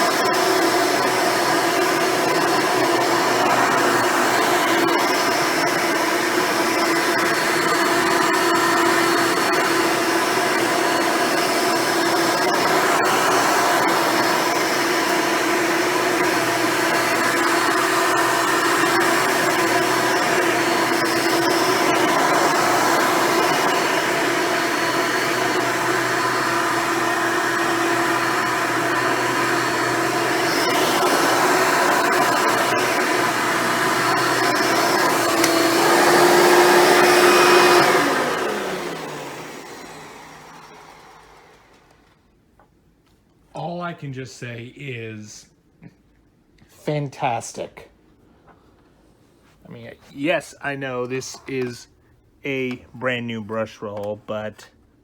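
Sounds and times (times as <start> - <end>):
upright vacuum running on carpet: 0.0 - 42.2.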